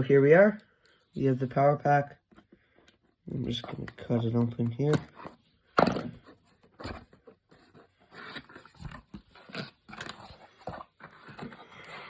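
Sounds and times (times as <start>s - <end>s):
packaging rustling: 6.7s - 12.0s.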